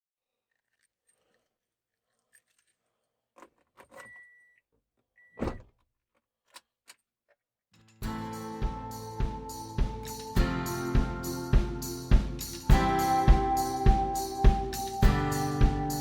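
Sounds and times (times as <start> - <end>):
loud thump: 5.4 - 5.7
short high beep: 9.0 - 16.0.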